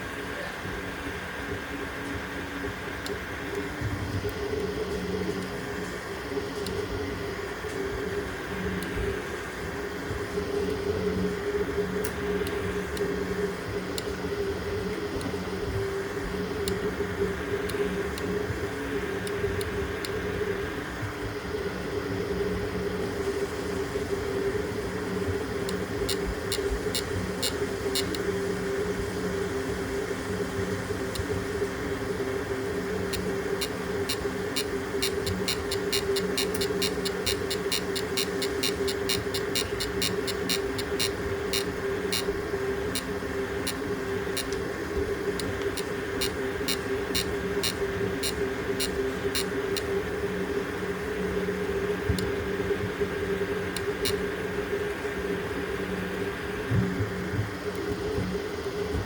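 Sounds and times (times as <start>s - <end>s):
printer stepper motors humming: 0.0s - 59.0s
light ticks: 25.6s - 28.2s, 33.1s - 42.3s, 44.4s - 44.6s, 45.3s - 49.9s.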